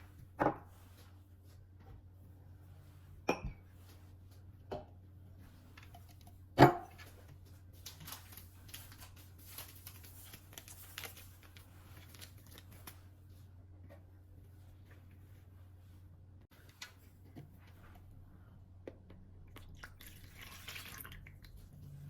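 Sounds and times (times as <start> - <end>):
rustling and crinkling: 5.3 - 18.2.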